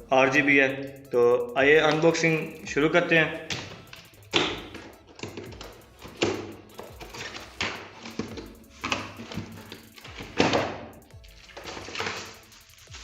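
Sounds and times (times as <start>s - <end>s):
plastic packaging rustling: 5.1s - 13.0s.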